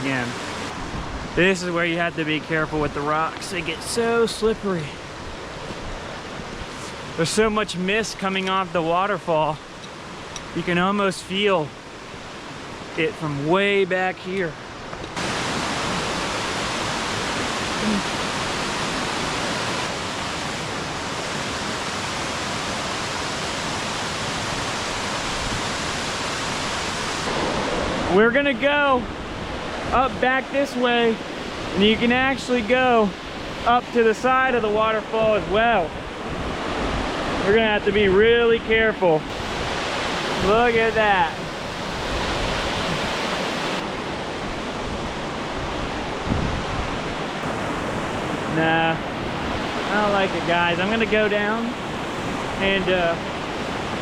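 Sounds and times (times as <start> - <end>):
waterfall rushing: 0.0 - 9.1, 14.6 - 38.0, 38.8 - 54.0
wind on microphone: 35.4 - 49.9.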